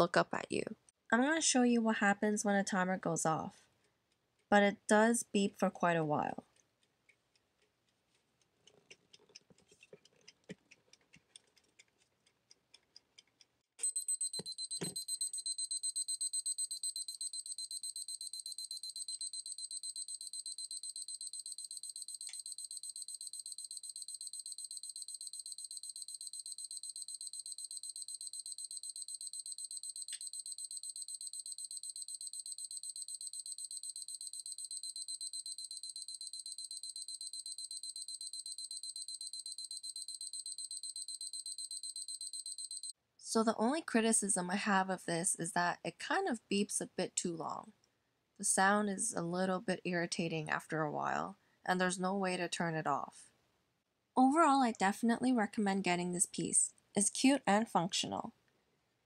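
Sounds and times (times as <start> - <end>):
kitchen timer ticking: 12.7 - 42.9
rapid high-pitched electronic beeping: 13.8 - 42.9.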